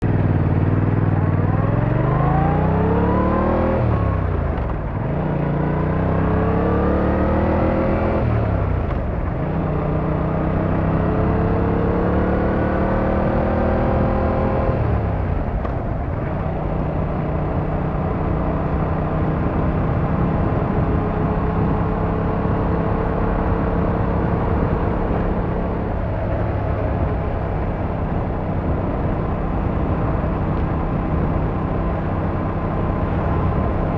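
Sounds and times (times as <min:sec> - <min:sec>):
motorcycle engine accelerating: 0:00.0 - 0:33.9.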